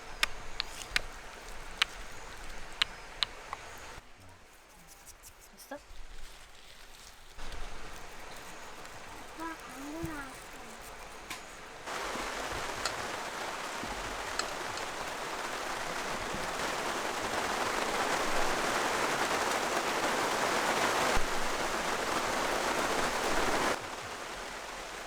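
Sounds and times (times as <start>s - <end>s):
heavy rain falling: 7.4s - 25.0s.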